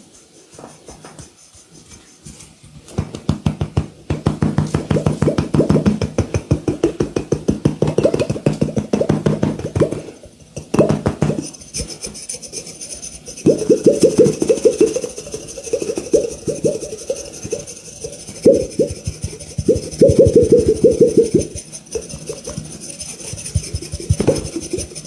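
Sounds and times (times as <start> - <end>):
hands slapping a body: 2.9 - 11.4.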